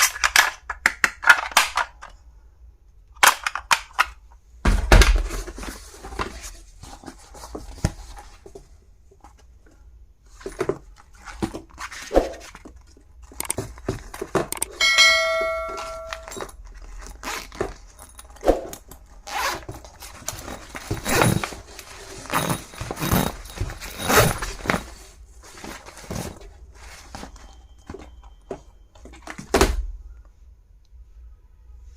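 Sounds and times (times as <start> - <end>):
short metallic ringing tone: 14.8 - 16.4.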